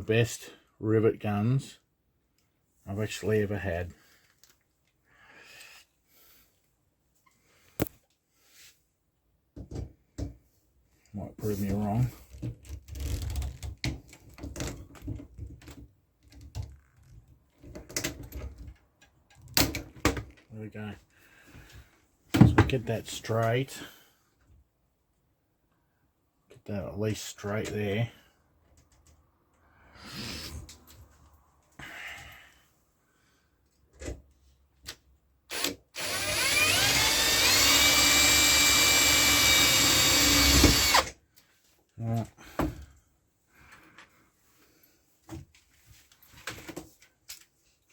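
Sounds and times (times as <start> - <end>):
power drill whining: 35.5 - 41.1
drill clicks: 35.5 - 41.2.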